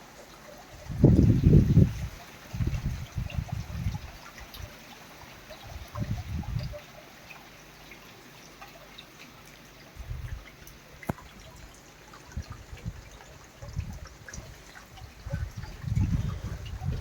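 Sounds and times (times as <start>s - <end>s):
rain falling: 0.0s - 17.0s
water trickling and dripping: 0.0s - 17.0s
dull low thumps: 12.4s - 17.0s.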